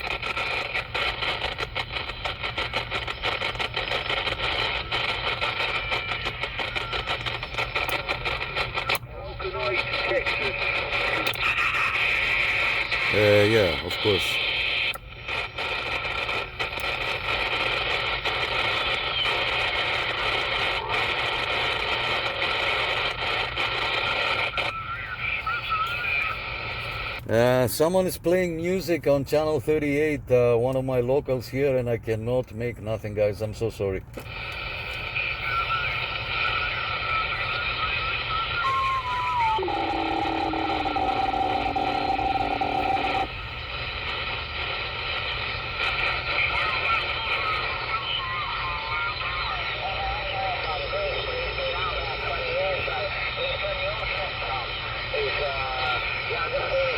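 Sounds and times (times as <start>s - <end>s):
radio static hiss and splatter: 0.0s - 28.8s, 34.2s - 56.9s
whistling tone: 35.4s - 43.2s.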